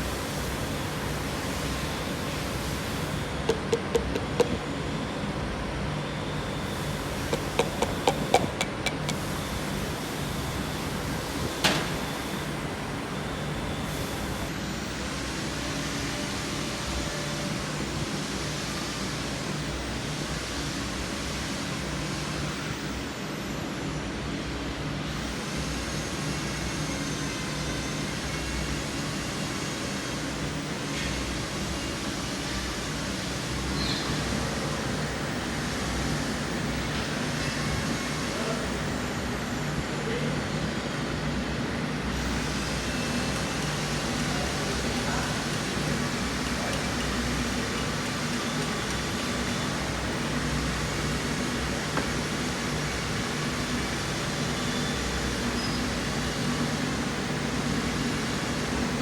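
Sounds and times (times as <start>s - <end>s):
steady hum: 0.0s - 11.4s
sharp taps on engine parts: 3.5s - 4.6s, 7.3s - 9.2s.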